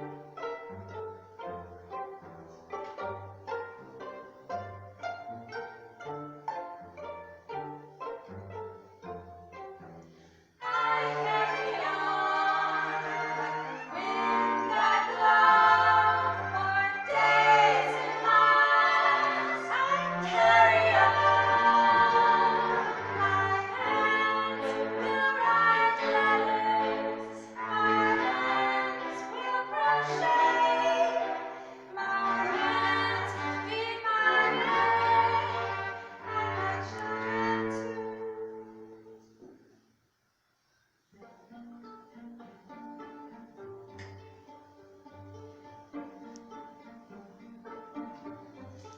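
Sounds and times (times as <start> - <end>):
voices singing together: 10.6 - 38.6.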